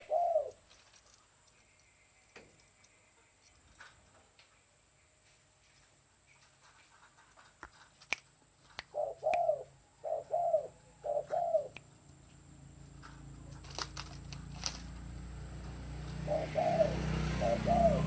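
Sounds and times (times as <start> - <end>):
dove cooing: 0.0 - 0.8, 8.9 - 11.9, 15.6 - 18.0.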